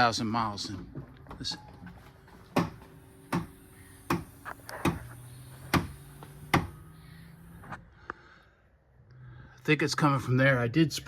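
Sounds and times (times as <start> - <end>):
liftgate motor humming: 1.4 - 7.8.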